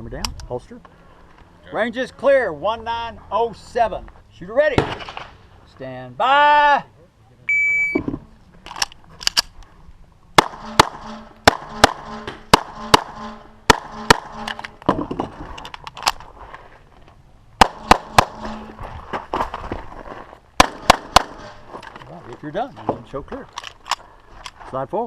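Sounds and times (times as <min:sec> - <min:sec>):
shot timer beep: 0:07.5 - 0:08.0
pistol shots: 0:10.4 - 0:14.8, 0:17.6 - 0:18.6, 0:20.6 - 0:21.6.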